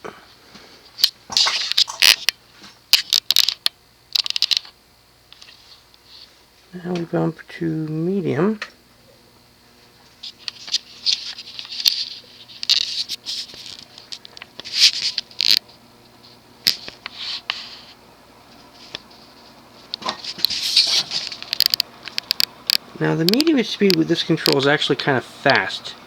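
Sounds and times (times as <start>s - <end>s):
ceiling fan motor humming: 0.0s - 26.0s
scratchy crackling and clicking: 10.2s - 17.9s, 18.6s - 24.7s.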